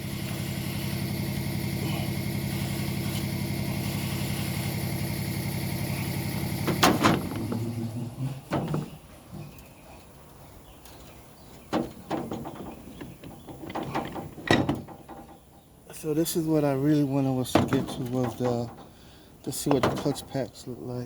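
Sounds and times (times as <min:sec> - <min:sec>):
motor hum: 0:00.0 - 0:09.7, 0:10.6 - 0:15.8
metal parts clanking: 0:10.9 - 0:15.4, 0:17.5 - 0:20.3.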